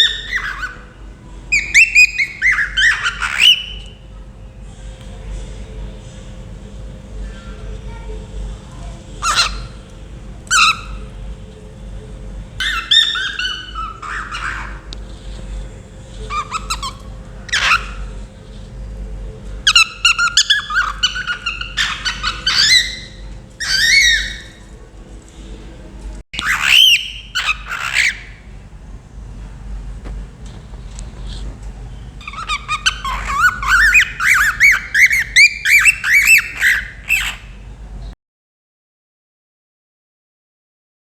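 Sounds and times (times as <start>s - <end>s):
cockatiel chirping and whistling: 0.0s - 0.9s, 1.5s - 4.0s, 9.2s - 9.8s, 10.5s - 11.1s, 12.6s - 14.9s, 16.2s - 18.2s, 19.7s - 24.6s, 26.4s - 28.3s, 32.2s - 37.6s.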